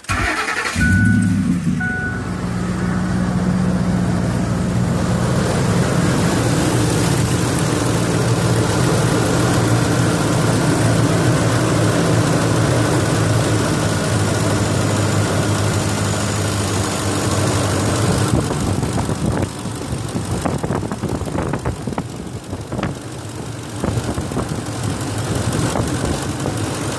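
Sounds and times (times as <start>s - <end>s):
engine idling with ticking: 6.4s - 26.9s.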